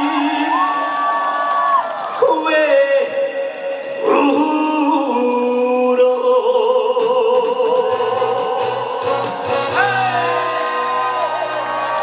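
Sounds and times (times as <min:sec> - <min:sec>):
man singing with vibrato: 0:00.0 - 0:01.0, 0:02.2 - 0:12.0
backing music: 0:03.8 - 0:12.0.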